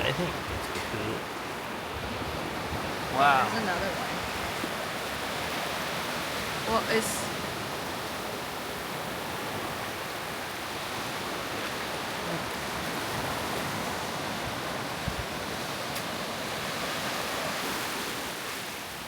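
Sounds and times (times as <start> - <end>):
waves washing on sandy shore: 0.0 - 19.0.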